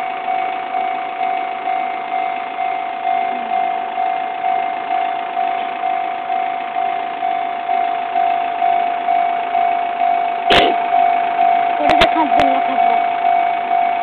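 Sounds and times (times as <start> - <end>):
level crossing bell ringing: 0.0 - 14.0
sharp knock: 10.5 - 10.8.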